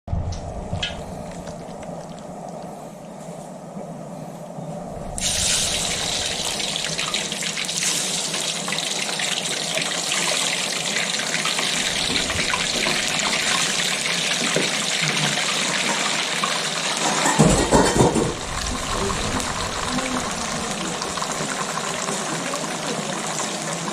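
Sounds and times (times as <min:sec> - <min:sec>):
water running into sink: 0:05.2 - 0:23.9.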